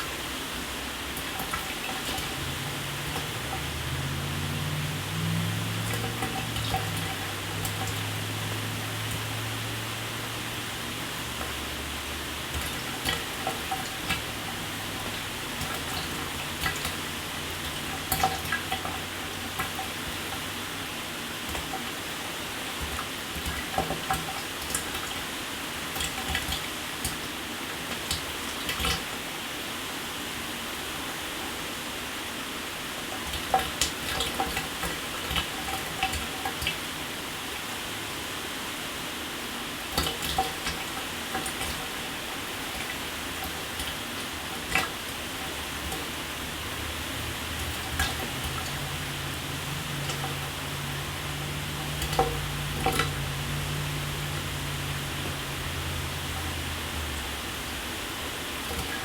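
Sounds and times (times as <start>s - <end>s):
splashes and drips: 0.0s - 29.4s, 32.8s - 38.4s, 39.5s - 59.0s.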